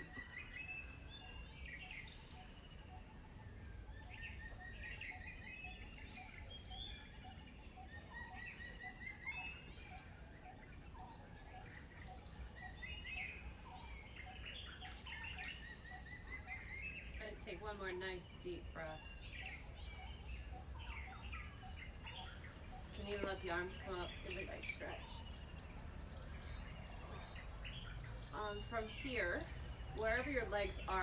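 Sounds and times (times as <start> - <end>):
birds chirping and calling: 0.0 - 31.0
low background rumble: 11.7 - 31.0.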